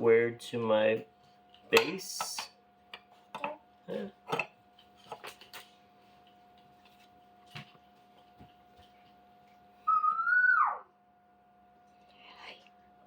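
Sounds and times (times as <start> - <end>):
loud whistle-like tone: 9.9 - 10.9.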